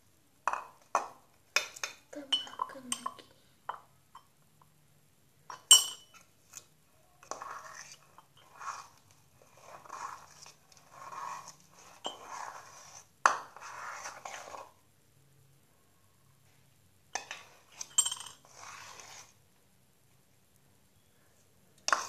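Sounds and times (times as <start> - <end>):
utensil clinking against bowl: 1.6 - 4.3
utensil stirring sticky mixture: 6.0 - 14.9, 17.2 - 19.6, 21.8 - 22.0.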